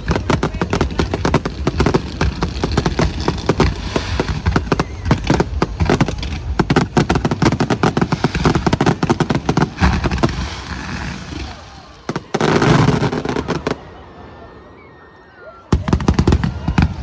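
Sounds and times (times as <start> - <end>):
fireworks bangs and crackles: 0.0 - 14.3, 15.7 - 17.0.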